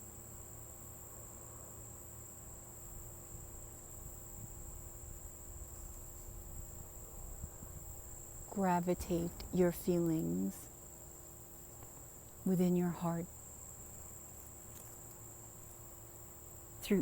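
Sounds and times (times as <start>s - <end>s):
crickets trilling: 0.0s - 17.0s
low background rumble: 5.1s - 10.7s.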